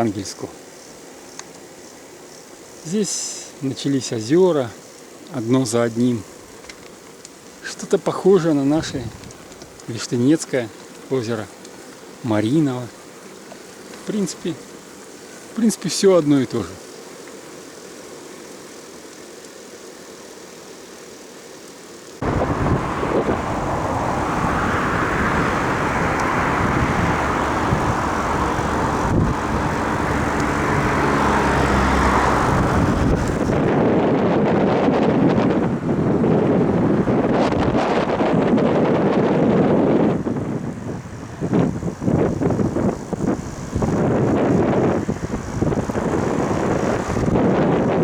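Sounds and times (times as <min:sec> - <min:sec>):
wind buffeting microphone: 0:08.6 - 0:09.7, 0:22.2 - 0:48.0
road noise: 0:22.2 - 0:38.8, 0:39.8 - 0:48.0.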